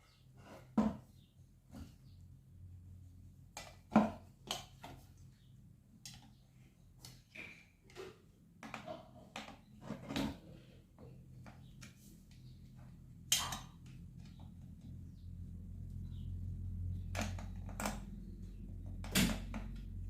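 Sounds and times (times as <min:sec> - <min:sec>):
faint low hum: 0:10.8 - 0:20.0.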